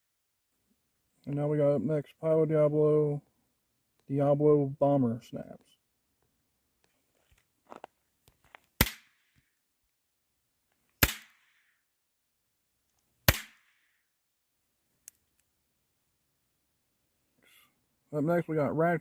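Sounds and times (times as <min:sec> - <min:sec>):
snap poppers cracking: 0:08.3 - 0:09.5, 0:11.0 - 0:11.7, 0:12.9 - 0:14.0.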